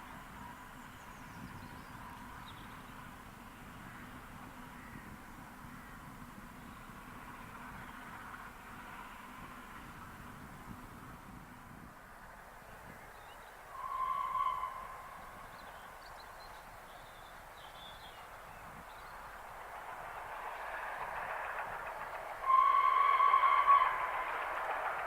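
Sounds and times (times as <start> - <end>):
train approaching rush: 0.0 - 25.0
steam locomotive whistle blasts: 13.7 - 15.1, 22.4 - 24.1.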